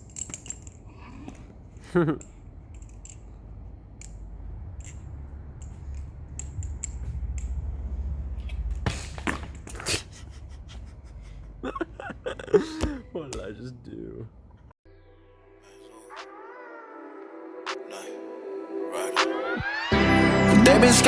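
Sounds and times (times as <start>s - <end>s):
low rumble: 1.0s - 8.8s
person speaking: 12.4s - 14.4s.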